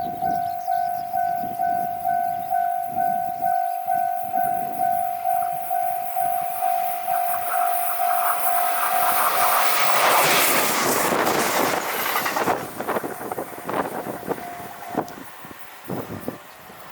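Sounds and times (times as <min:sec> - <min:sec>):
level-crossing bell ringing: 0:00.0 - 0:09.8
train rushing past: 0:00.0 - 0:16.9
wheels clacking over rail joints: 0:04.9 - 0:16.9.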